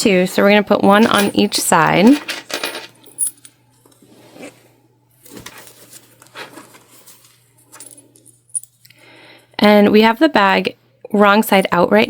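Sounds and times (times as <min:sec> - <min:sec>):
handling rustles: 0:00.3 - 0:04.6, 0:05.2 - 0:08.8.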